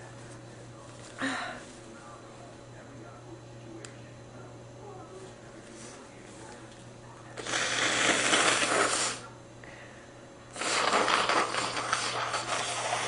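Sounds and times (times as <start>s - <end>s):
person blowing nose: 7.4s - 9.3s, 10.5s - 13.0s.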